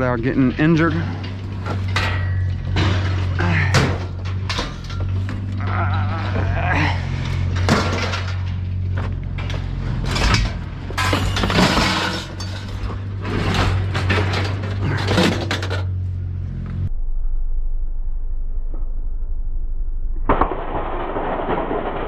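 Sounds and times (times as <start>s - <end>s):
scrap metal clattering and crashing: 0.0s - 16.1s
steady low hum: 0.0s - 22.0s
glass breaking: 10.1s - 14.6s.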